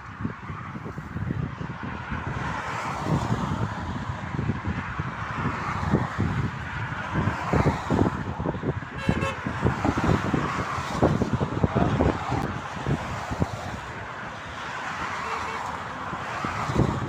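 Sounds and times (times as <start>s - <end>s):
motorway traffic passing: 0.0s - 17.0s
wind buffeting microphone: 0.0s - 17.0s
vehicle horn toot: 9.0s - 9.5s, 15.2s - 15.7s.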